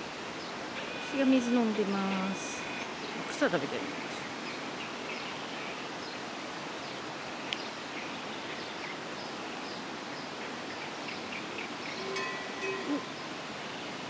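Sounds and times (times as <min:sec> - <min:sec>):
river flowing: 0:00.0 - 0:14.0
faint bird chirps: 0:06.8 - 0:14.0.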